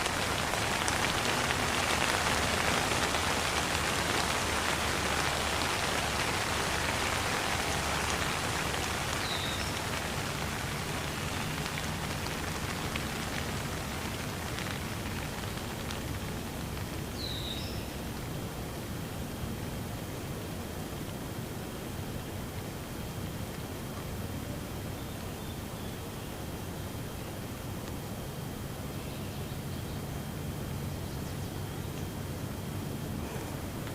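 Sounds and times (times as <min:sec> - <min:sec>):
falling water hissing: 0:00.0 - 0:18.5
bird chirping: 0:09.1 - 0:10.0.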